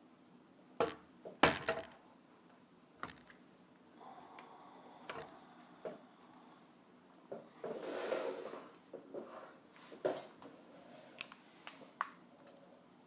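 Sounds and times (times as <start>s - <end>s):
plastic parts clicking and knocking: 0.8s - 2.0s, 3.0s - 3.4s, 5.1s - 5.3s.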